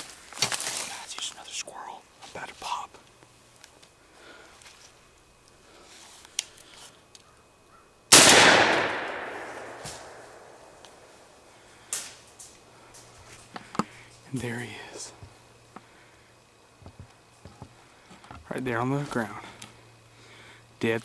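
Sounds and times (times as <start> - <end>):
shotgun blast with echo: 8.1 - 10.6.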